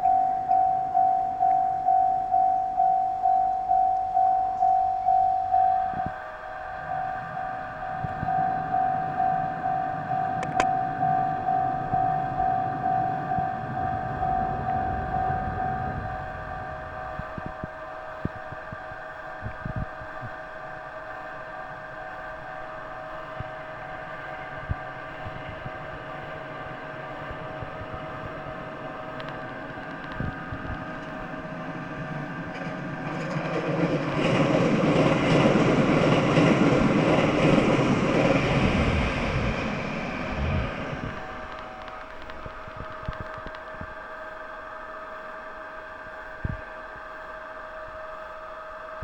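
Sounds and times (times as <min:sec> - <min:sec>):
level crossing warning bell ringing: 0:00.0 - 0:19.4
train passing: 0:00.0 - 0:49.0.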